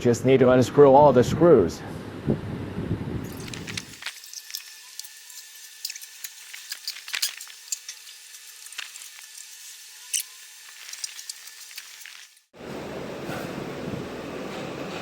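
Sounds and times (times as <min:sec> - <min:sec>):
screws being unscrewed: 0:03.3 - 0:12.3.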